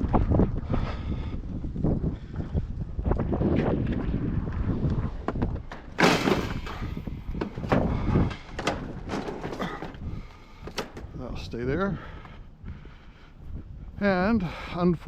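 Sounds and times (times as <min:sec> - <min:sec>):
wind buffeting microphone: 0:00.0 - 0:15.0
knocks and clunks of junk: 0:05.2 - 0:11.1
loud scraping crash: 0:06.0 - 0:07.0.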